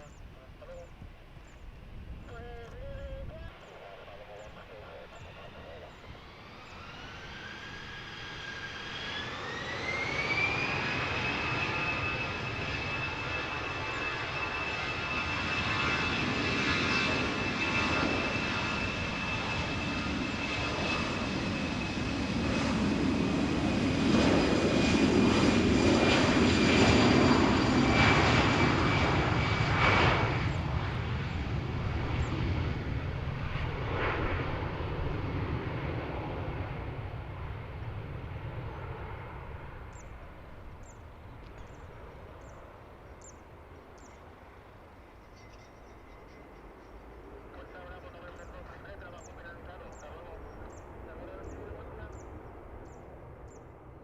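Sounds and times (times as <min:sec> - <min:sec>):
jet taking off: 0:00.0 - 0:45.0, 0:47.1 - 0:54.0
jet engines spooling up: 0:03.5 - 0:33.4.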